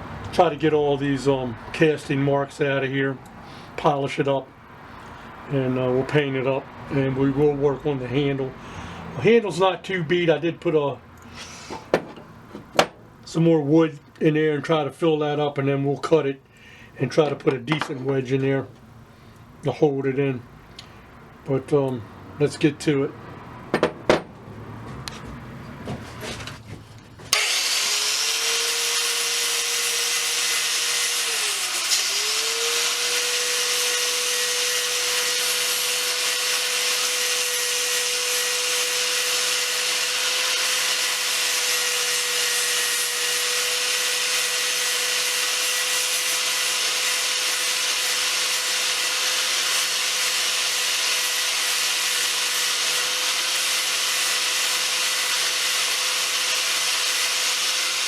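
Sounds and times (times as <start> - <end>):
angle grinder grinding metal: 27.3 - 58.0.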